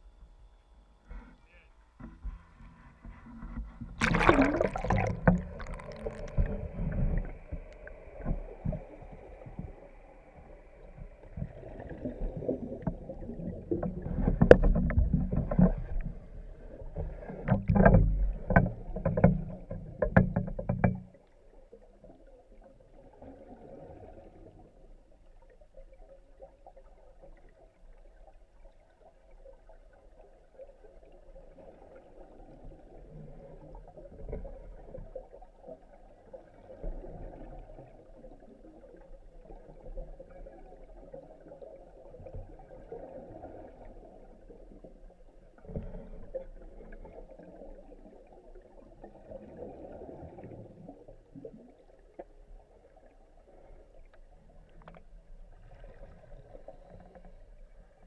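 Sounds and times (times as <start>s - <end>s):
faint low murmur: 0.0s - 4.2s
muffled churning water: 0.0s - 58.0s
underwater knocks and clicks: 2.0s - 9.8s, 11.2s - 21.4s, 54.1s - 55.2s.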